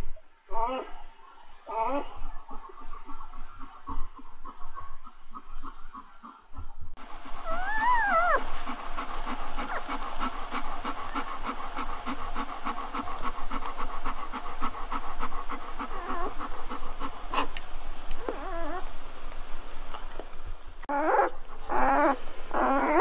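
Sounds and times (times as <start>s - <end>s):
puppy panting: 7.0s - 17.6s
puppy whining: 7.4s - 8.7s, 15.8s - 16.5s, 18.2s - 18.9s, 20.9s - 23.0s.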